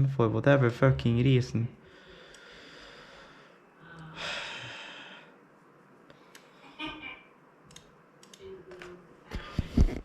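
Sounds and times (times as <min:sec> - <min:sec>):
person sighing: 0:03.8 - 0:05.3.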